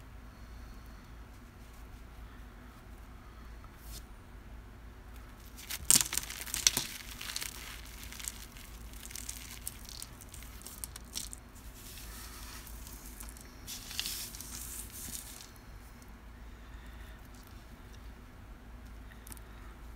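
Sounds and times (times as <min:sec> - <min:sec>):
cornstarch crunching: 0:05.4 - 0:15.6.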